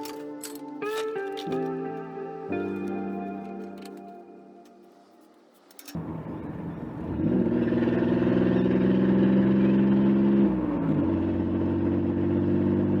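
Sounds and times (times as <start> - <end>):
car engine revving: 6.0 - 13.0.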